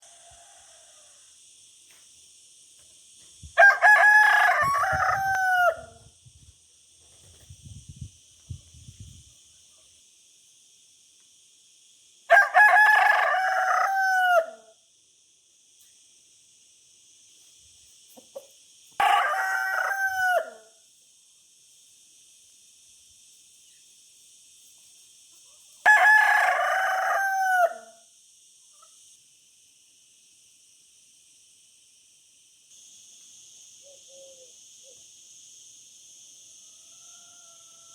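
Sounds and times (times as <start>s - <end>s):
rooster crowing: 0.0s - 1.4s, 3.6s - 6.0s, 12.3s - 14.7s, 19.0s - 20.7s, 25.8s - 28.0s, 36.5s - 37.9s.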